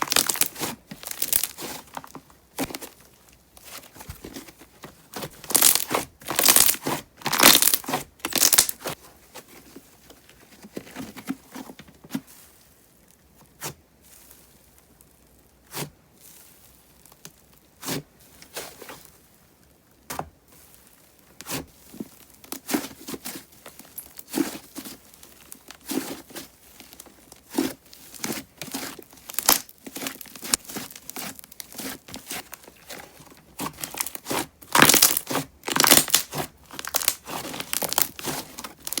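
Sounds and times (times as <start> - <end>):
slime popping air bubbles: 0.0 - 1.6, 5.5 - 8.7, 34.7 - 38.1.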